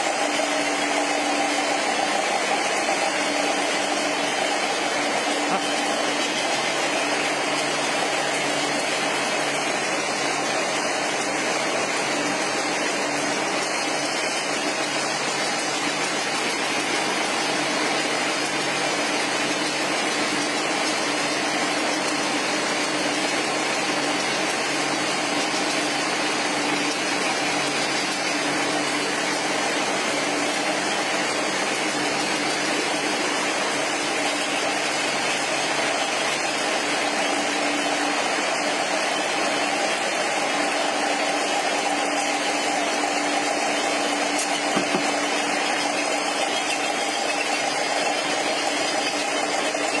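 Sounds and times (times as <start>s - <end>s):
machine hum with tones: 0.0s - 39.8s.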